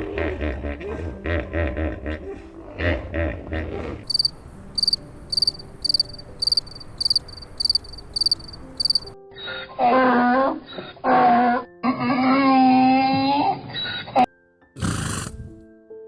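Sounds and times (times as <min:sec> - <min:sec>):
cricket chirping: 0:04.1 - 0:09.2.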